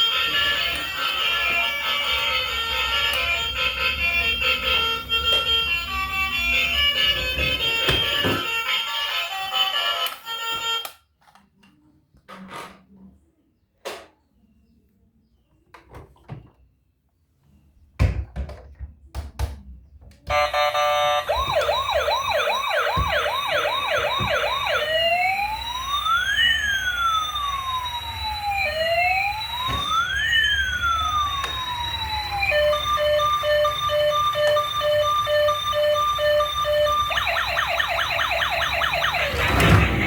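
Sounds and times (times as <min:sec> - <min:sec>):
toy electronic siren: 0:00.0 - 0:11.0, 0:20.3 - 0:40.0.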